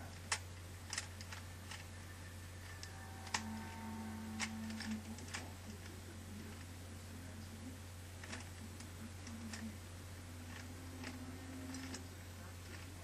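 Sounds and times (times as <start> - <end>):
steady low hum: 0.0 - 13.0
puzzle cube clicks: 0.1 - 1.9, 4.3 - 6.6, 10.4 - 13.0.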